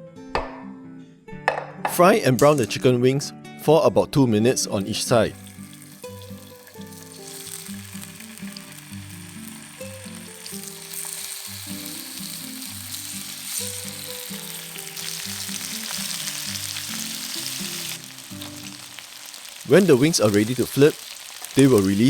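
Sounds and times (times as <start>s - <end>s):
soft background music: 0.0s - 22.0s
wings sizzling in hot oil: 4.8s - 22.0s.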